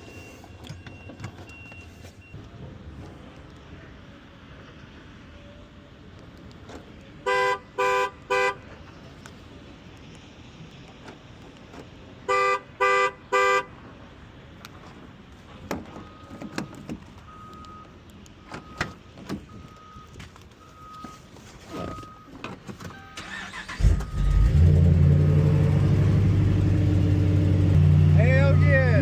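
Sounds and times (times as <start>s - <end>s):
car horn honks: 7.2s - 8.6s, 12.3s - 13.7s
engine cranking: 23.2s - 25.2s.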